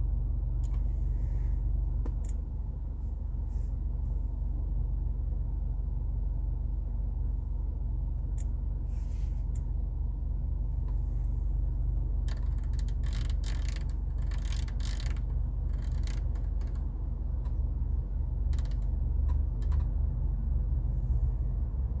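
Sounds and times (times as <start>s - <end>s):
steady low rumble: 0.0s - 22.0s
clicks and creaks: 12.2s - 17.6s, 18.5s - 19.9s.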